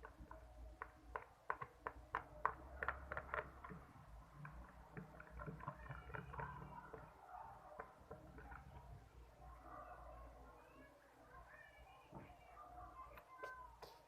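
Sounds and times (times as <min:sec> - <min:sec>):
slime squelching: 0:00.0 - 0:09.1.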